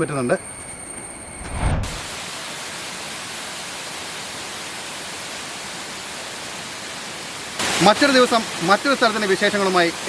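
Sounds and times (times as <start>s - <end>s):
waterfall roaring: 6.9s - 10.0s.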